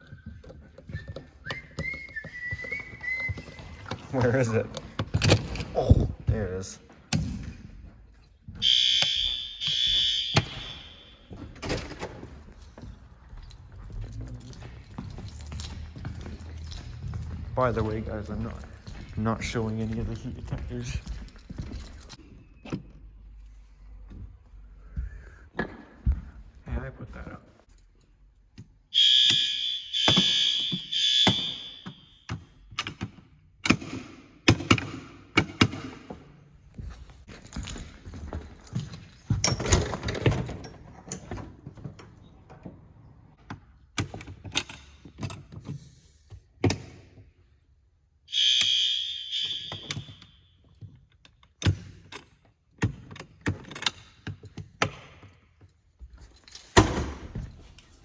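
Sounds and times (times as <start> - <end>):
fire alarm horn blasts: 8.6 - 11.5, 28.9 - 32.3, 48.3 - 50.6.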